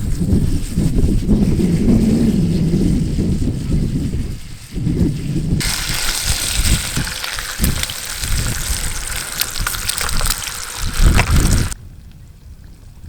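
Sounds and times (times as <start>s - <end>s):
wind rumbling on microphone: 0.0s - 13.0s
food sizzling in a pan: 5.6s - 11.8s.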